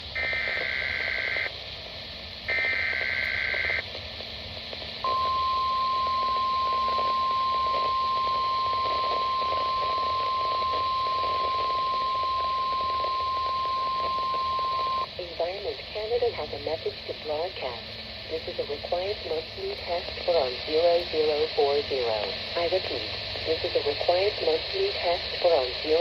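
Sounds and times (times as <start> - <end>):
radio receiver hiss: 0.0 - 26.0
steady warning alarm tone: 5.0 - 15.1
warbling data tones: 5.0 - 15.1.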